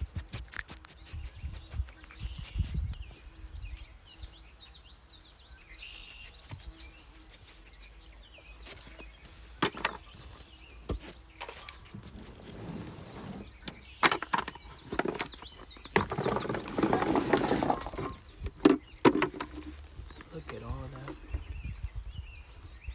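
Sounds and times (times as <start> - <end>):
small birds chirping: 0.0 - 22.9.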